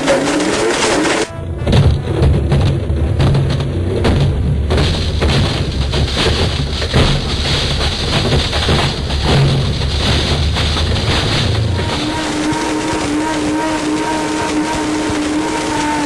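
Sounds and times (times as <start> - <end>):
blender motor with clattering: 0.0 - 1.4.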